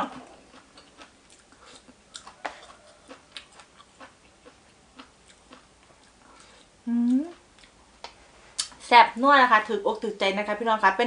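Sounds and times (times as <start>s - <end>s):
person chewing wetly: 0.0s - 8.8s.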